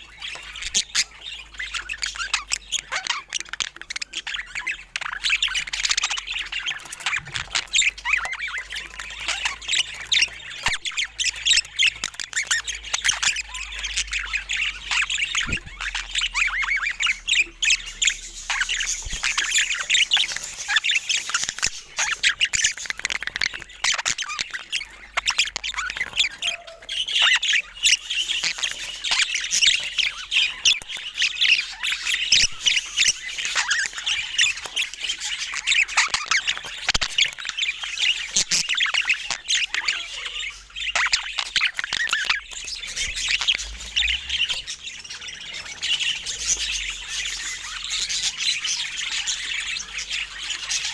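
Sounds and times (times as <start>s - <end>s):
budgerigars chattering: 0.0s - 50.9s.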